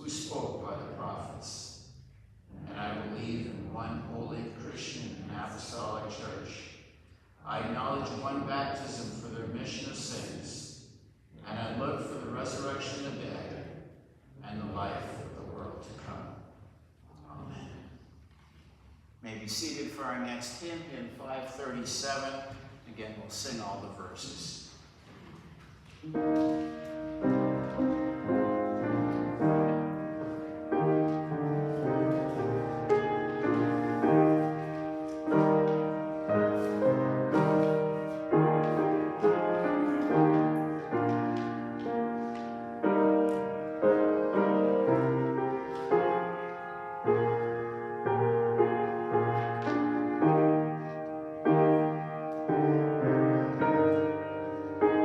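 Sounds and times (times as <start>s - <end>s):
piano playing hymn chords: 26.1s - 55.0s.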